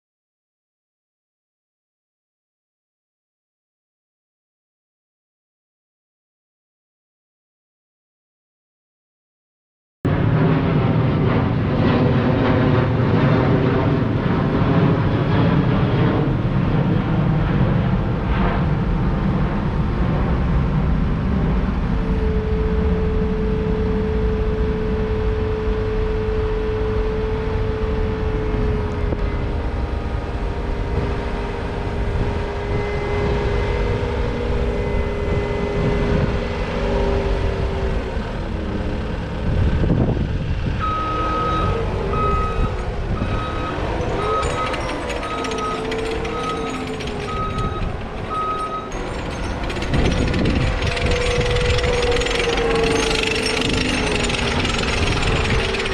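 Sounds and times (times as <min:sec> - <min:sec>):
diesel engine running: 0:13.9 - 0:55.9
steady whine: 0:40.9 - 0:55.9.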